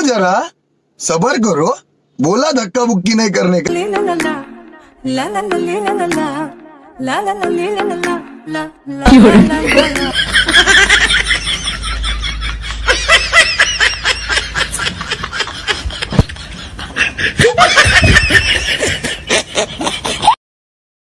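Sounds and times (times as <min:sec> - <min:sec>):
people laughing and giggling: 0:09.1 - 0:20.4.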